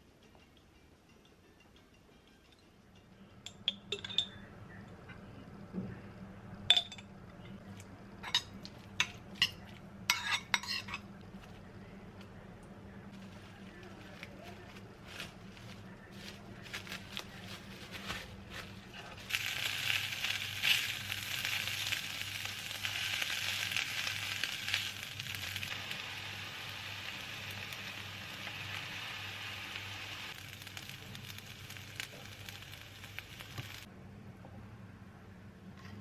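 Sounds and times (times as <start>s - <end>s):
food sizzling in frying pan: 19.3s - 33.9s.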